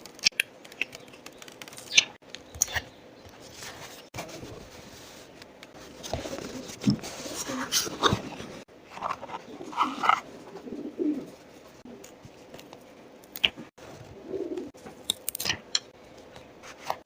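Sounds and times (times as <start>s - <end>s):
paper crinkling and tapping: 0.0s - 2.2s
bird cooing: 9.4s - 12.0s, 14.1s - 14.7s.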